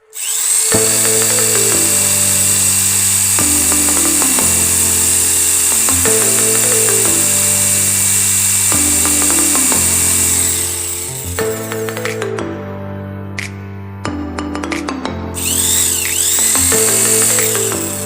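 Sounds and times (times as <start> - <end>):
electric drill whining: 0.0 - 11.4, 15.4 - 18.0
background music: 0.0 - 18.0.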